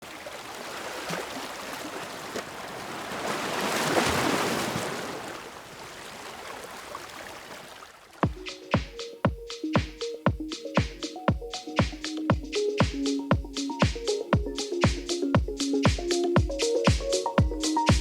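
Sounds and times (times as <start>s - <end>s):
dance music beat with kick drum: 8.2s - 18.0s.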